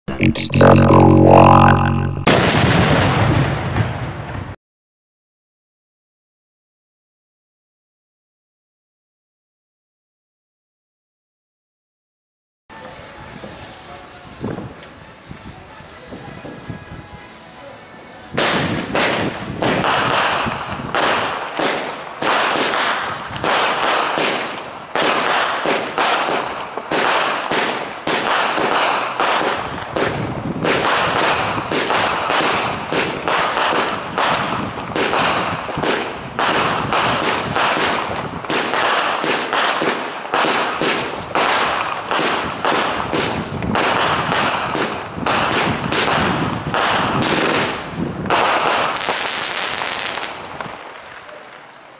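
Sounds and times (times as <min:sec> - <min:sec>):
fireworks launching and bursting: 0:00.1 - 0:04.6, 0:18.3 - 0:51.9.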